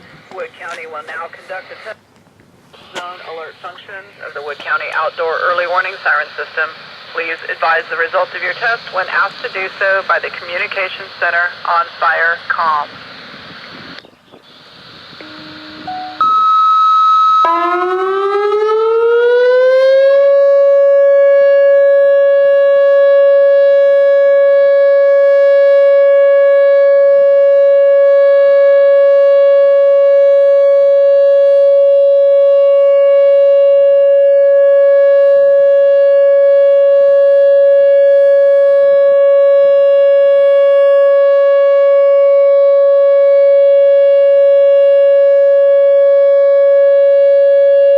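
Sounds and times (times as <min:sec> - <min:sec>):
warning siren wailing: 0:14.8 - 0:47.9
short steady beeps: 0:15.2 - 0:16.7.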